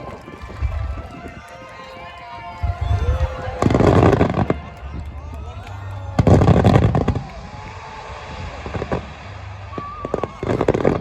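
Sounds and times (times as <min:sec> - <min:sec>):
fireworks crackling: 0:00.0 - 0:11.0
lingering rumble: 0:00.0 - 0:11.0
fireworks booming: 0:02.6 - 0:11.0.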